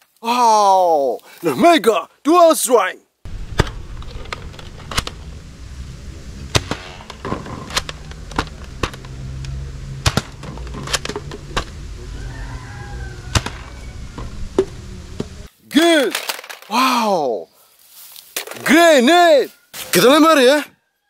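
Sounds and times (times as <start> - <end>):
low steady rumble: 3.3 - 15.5.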